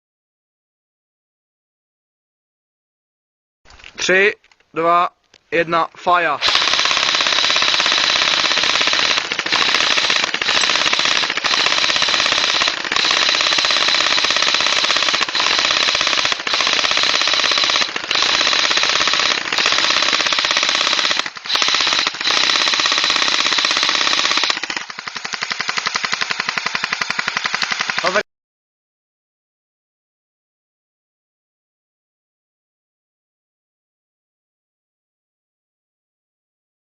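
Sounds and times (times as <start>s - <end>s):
airsoft guns firing full auto: 6.4s - 28.2s.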